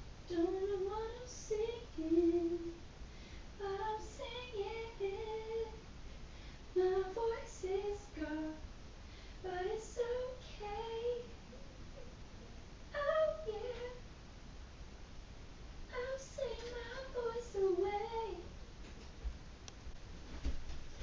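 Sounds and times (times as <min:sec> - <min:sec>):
woman singing softly: 0:00.3 - 0:02.8, 0:03.6 - 0:05.8, 0:06.7 - 0:08.7, 0:09.4 - 0:11.4, 0:12.9 - 0:14.0, 0:15.9 - 0:18.5.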